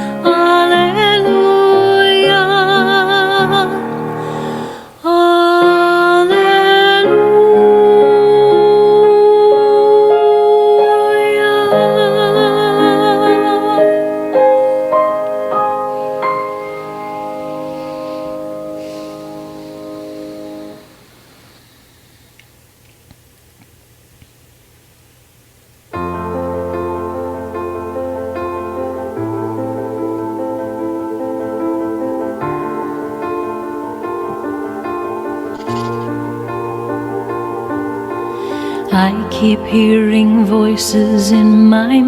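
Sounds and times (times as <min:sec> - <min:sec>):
faint hiss: 0:00.0 - 0:42.0
keyboard playing held chords: 0:07.1 - 0:21.1.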